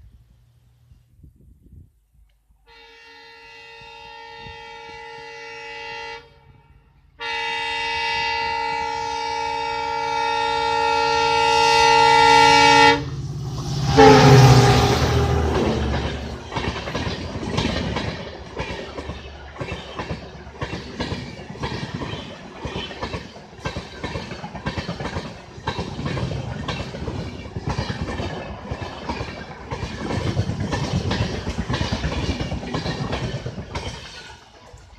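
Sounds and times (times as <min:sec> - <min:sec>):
train wheels clattering over rail joints: 0:13.5 - 0:34.9.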